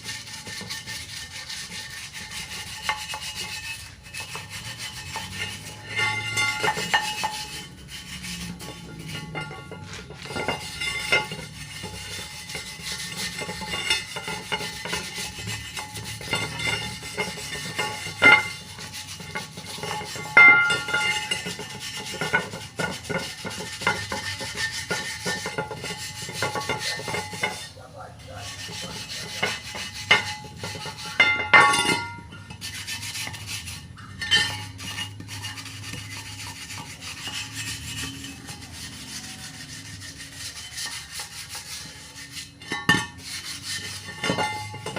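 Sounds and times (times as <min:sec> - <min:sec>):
scraping on metal wheel rim: 0:00.0 - 0:44.9
short metallic rings: 0:00.5 - 0:27.8, 0:28.4 - 0:44.9.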